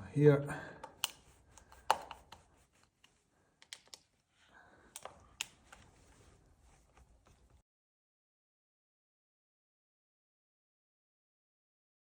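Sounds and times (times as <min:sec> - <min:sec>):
screwdriver clicking and scraping: 0:00.8 - 0:04.2, 0:04.9 - 0:05.9.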